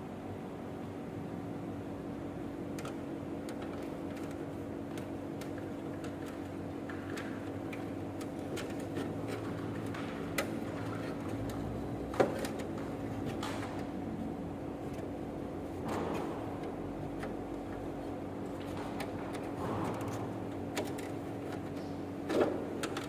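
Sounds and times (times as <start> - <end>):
electrical hum: 0.0 - 23.0
plastic clicks and scraping: 2.8 - 13.9, 18.5 - 23.0.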